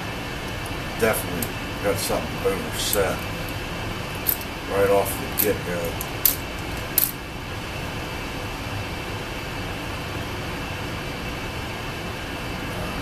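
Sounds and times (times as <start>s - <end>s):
furnace rushing noise: 0.0s - 7.2s
lock pick metallic click: 4.2s - 4.5s, 5.4s - 7.2s.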